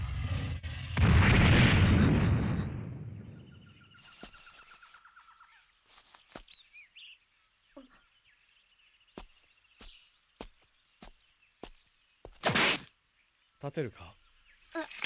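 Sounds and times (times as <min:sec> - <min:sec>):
loud boom: 0:00.6 - 0:03.4.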